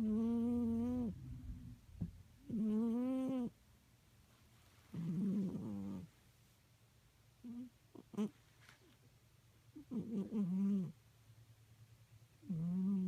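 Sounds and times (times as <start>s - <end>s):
cat snoring: 0.0s - 1.7s, 2.4s - 3.5s, 4.9s - 6.1s, 7.4s - 8.3s, 9.8s - 11.0s, 12.4s - 13.0s.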